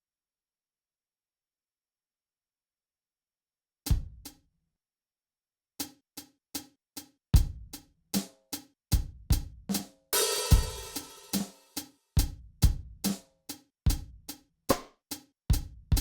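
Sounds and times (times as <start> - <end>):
cymbal crash: 10.2 - 11.4
electronic drum beat: 10.2 - 11.5.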